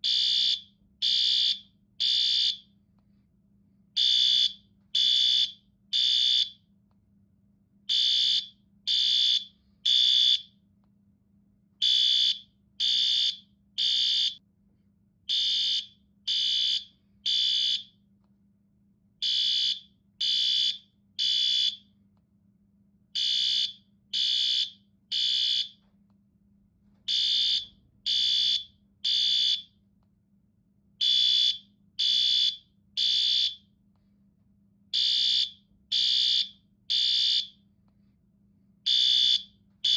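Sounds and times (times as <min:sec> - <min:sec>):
fire alarm beeps: 0:00.0 - 0:02.7, 0:04.0 - 0:06.6, 0:07.9 - 0:10.6, 0:11.8 - 0:14.4, 0:15.3 - 0:18.0, 0:19.2 - 0:21.9, 0:23.2 - 0:25.8, 0:27.1 - 0:29.8, 0:31.0 - 0:33.7, 0:34.9 - 0:37.6, 0:38.9 - 0:39.9.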